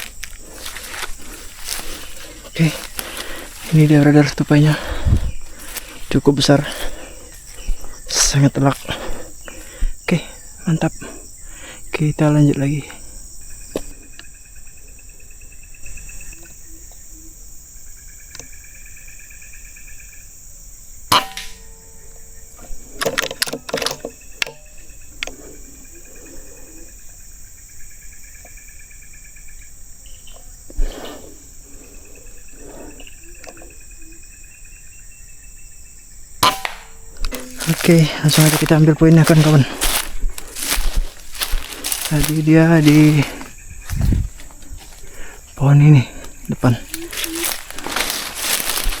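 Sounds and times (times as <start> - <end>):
low pulsing insect chirr: 0.0 - 49.0
high-pitched insect buzzing: 36.7 - 45.0, 46.6 - 49.0.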